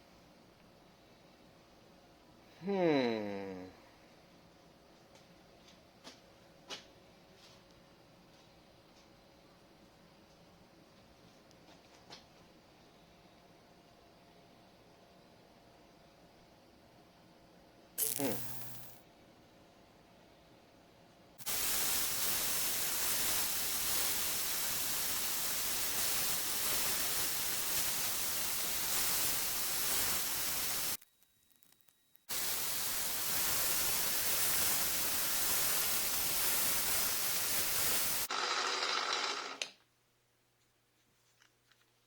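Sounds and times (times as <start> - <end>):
loud steady hiss: 18.0 - 19.0, 21.4 - 31.0, 32.2 - 38.3
rough hissing burst: 18.0 - 19.0, 21.4 - 31.0, 32.2 - 38.3.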